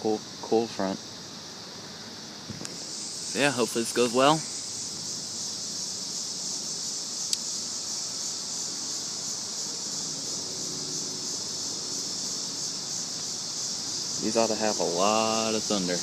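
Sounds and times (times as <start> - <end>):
insects buzzing: 0.0 - 16.0
sharp tick: 7.3 - 7.5.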